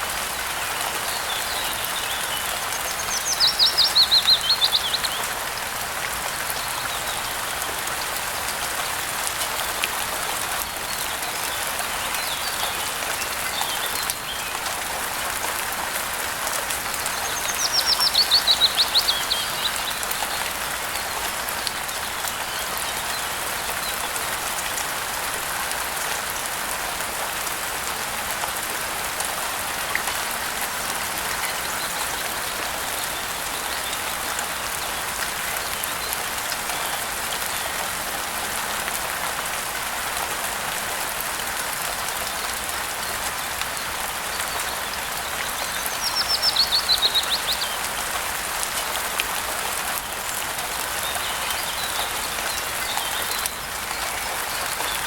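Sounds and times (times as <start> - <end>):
rainfall hiss: 0.0 - 55.0.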